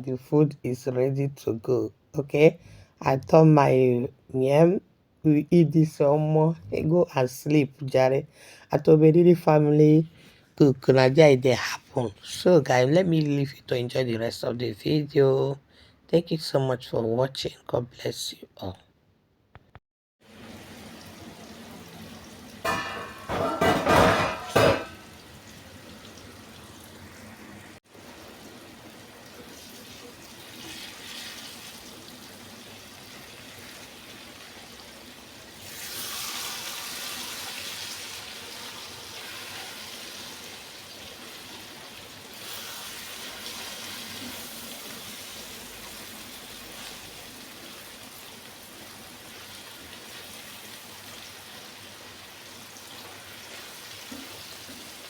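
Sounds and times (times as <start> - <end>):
food frying in hot oil: 20.2 - 55.0.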